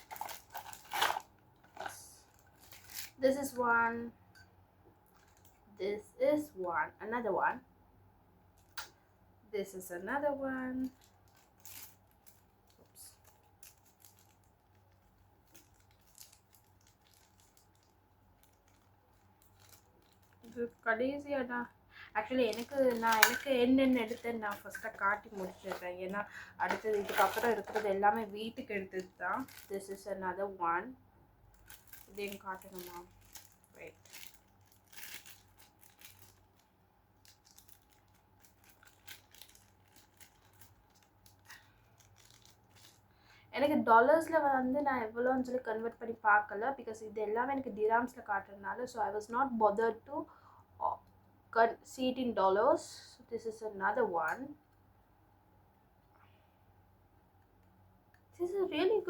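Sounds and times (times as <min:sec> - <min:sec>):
packaging clicks and rustles: 0:00.0 - 0:03.2, 0:10.8 - 0:20.9, 0:22.4 - 0:30.0, 0:31.5 - 0:43.1
low steady hum: 0:00.0 - 0:59.0.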